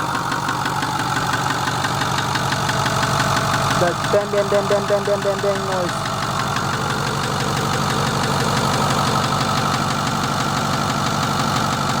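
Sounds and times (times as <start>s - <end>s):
diesel engine idling with ticking knock: 0.0s - 12.0s.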